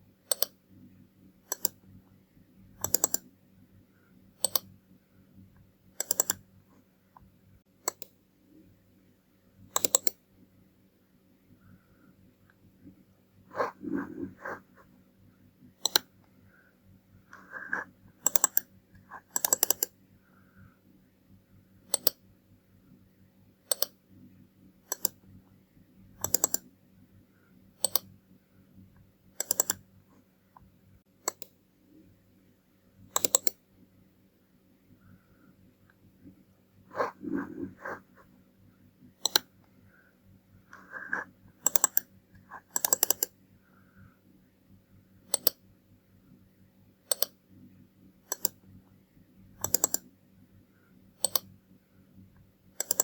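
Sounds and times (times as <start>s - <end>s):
steady low hum: 0.0s - 53.0s
computer mouse buttons clicking: 0.3s - 0.6s, 1.4s - 1.8s, 2.8s - 3.3s, 4.4s - 4.7s, 6.0s - 6.5s, 7.2s - 8.2s, 9.7s - 10.2s, 15.8s - 16.1s, 17.3s - 20.0s, 21.9s - 22.2s, 23.7s - 24.0s, 24.8s - 25.2s, 26.2s - 26.7s, 27.8s - 28.1s, 29.4s - 29.8s, 30.6s - 31.6s, 33.1s - 33.6s, 39.2s - 39.5s, 40.7s - 43.4s, 45.3s - 45.6s, 47.1s - 47.4s, 48.2s - 48.6s, 49.6s - 50.1s, 51.2s - 51.6s, 52.8s - 53.0s.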